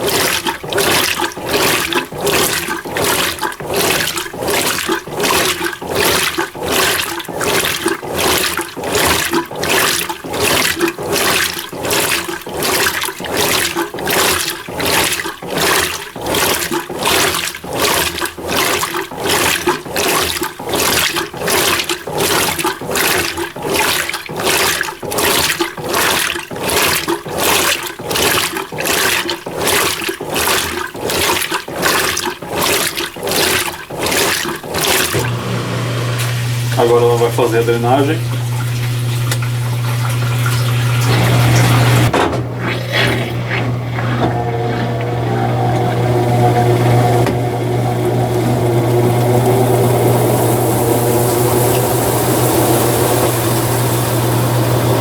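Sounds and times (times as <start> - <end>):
washing machine sloshing: 0.0 - 55.0
motor hum: 33.3 - 55.0.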